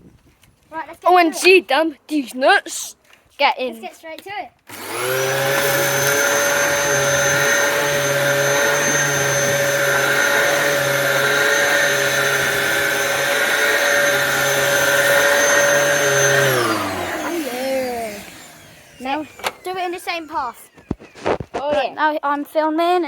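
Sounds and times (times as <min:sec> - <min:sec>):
vacuum cleaner whine: 0:04.7 - 0:21.6.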